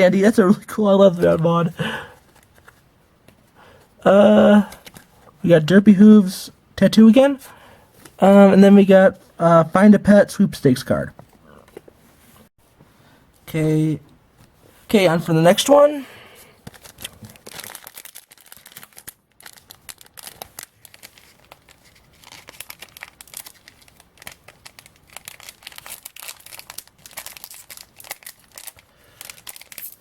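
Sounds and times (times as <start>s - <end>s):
wrapper tearing and crinkling: 16.7s - 30.0s.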